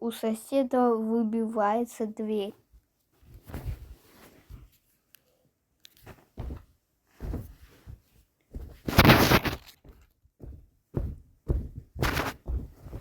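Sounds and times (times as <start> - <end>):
dull thumps against a wall: 6.4 - 13.0.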